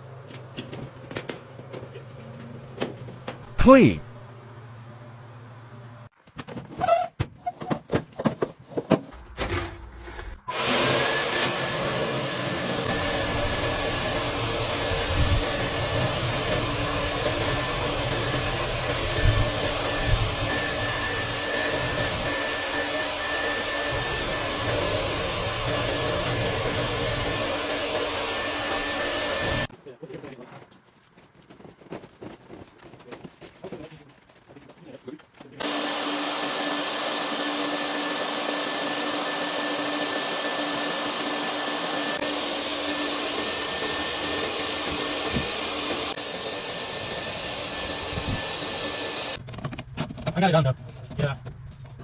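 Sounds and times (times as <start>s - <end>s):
blower motor rushing air: 10.5s - 29.7s, 35.6s - 49.4s
vacuum running with whine: 10.5s - 29.7s, 35.6s - 49.4s.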